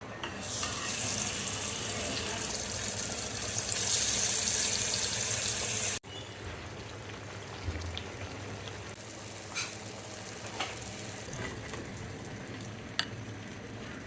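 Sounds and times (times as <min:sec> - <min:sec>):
tap water running: 0:00.3 - 0:09.6.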